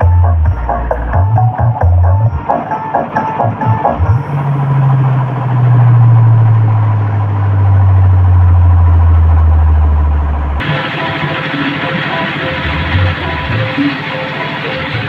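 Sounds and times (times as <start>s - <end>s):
deep bass tone sliding down: 0.0s - 10.7s, 12.5s - 14.0s.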